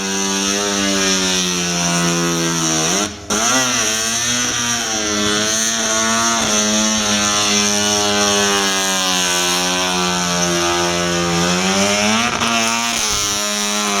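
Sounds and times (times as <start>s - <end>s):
rotary engine at high revs: 0.0s - 14.0s.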